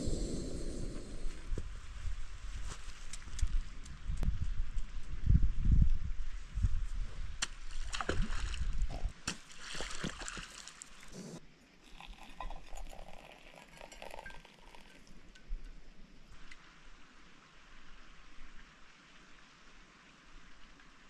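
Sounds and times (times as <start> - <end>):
small water splashes: 7.4 - 11.2.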